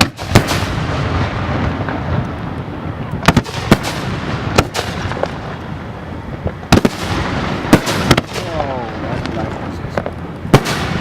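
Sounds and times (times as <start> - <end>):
fireworks crackling bursts: 0.0 - 11.0
fireworks sharp bangs: 0.0 - 11.0.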